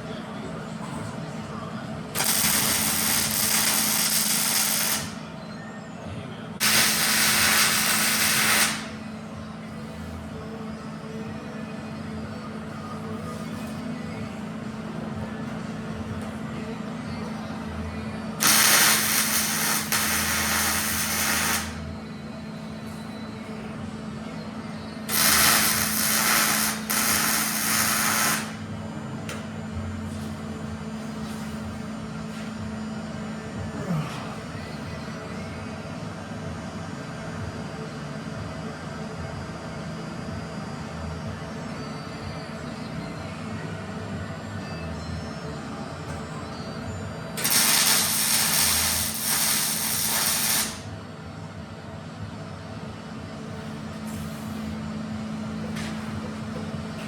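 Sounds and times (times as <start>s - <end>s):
crackling electric arc torch: 2.1s - 5.3s, 6.6s - 9.0s, 18.4s - 21.9s, 25.1s - 28.7s, 47.4s - 50.9s
power tool hissing: 18.4s - 21.8s, 25.1s - 28.6s.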